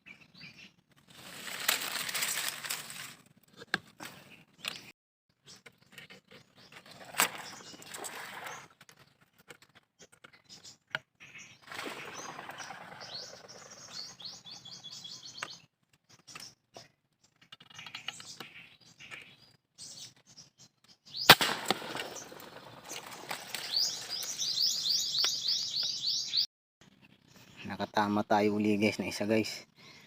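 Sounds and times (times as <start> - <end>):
small birds chirping: 0.0 - 1.0, 3.5 - 30.0
wings flapping: 11.6 - 13.8, 21.3 - 24.4
gunshot: 21.3 - 22.7.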